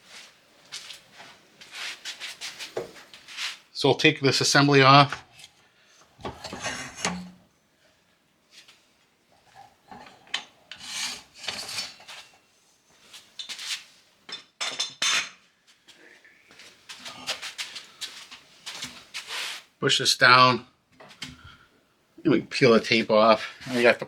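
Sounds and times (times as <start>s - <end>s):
metal clanking and scraping: 6.2s - 7.4s, 9.9s - 12.3s.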